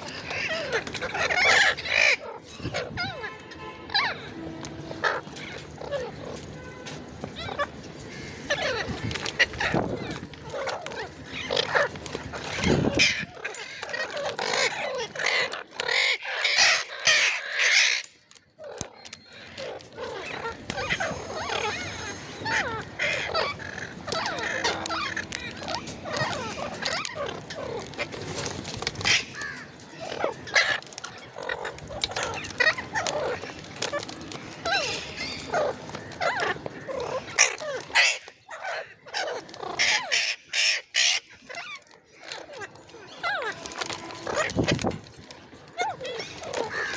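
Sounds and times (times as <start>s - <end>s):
parrot calling: 0.0s - 4.3s, 18.6s - 28.2s
parrot warbling chatter: 0.0s - 6.4s, 7.3s - 45.0s, 45.6s - 46.9s
parrot harsh squawks: 0.1s - 4.3s, 8.5s - 18.0s, 19.4s - 28.1s, 34.6s - 44.6s.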